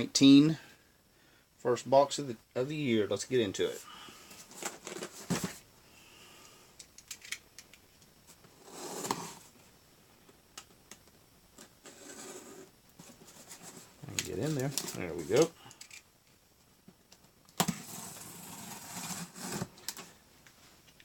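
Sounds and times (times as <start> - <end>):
cardboard rasping: 17.6 - 19.8.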